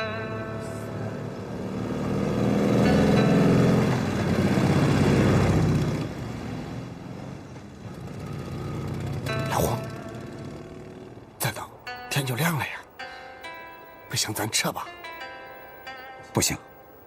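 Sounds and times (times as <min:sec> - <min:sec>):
vehicle passing: 0:00.3 - 0:11.9.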